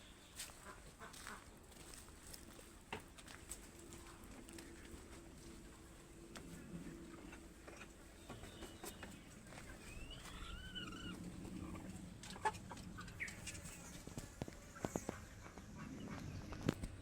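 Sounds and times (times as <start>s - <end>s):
chickens clucking: 0.0s - 17.0s
drawn-out wavering chicken call: 9.6s - 13.7s.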